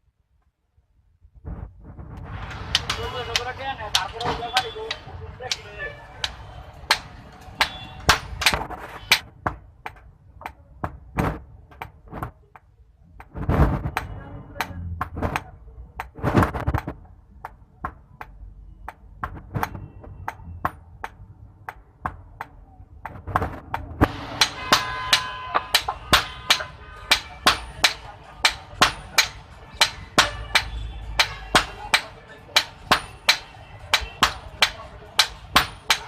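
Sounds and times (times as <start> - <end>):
hammer striking hot iron: 2.7 - 5.6, 23.7 - 36.0.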